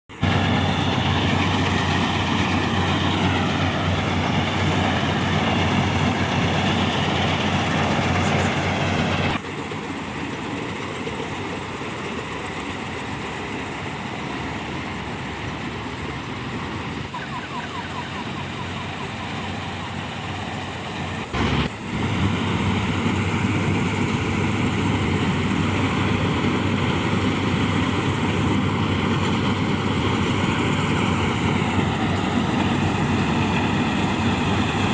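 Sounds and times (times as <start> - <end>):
heavy machinery engines running: 0.1 - 34.9.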